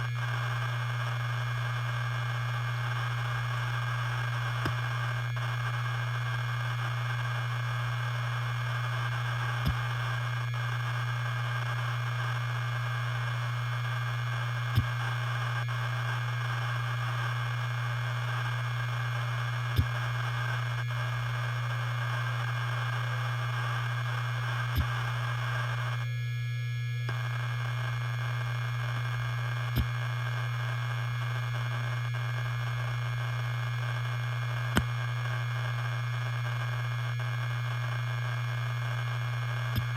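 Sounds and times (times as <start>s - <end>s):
hard disk drive hum: 0.0s - 39.9s
hard disk drive click: 9.6s - 9.9s, 34.7s - 34.9s.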